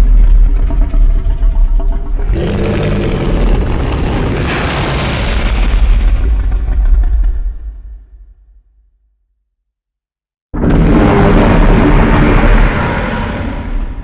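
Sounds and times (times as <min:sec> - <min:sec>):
loud deep rumble: 0:00.0 - 0:08.8, 0:10.6 - 0:14.0
harsh noisy sound: 0:02.2 - 0:07.8, 0:10.6 - 0:14.0.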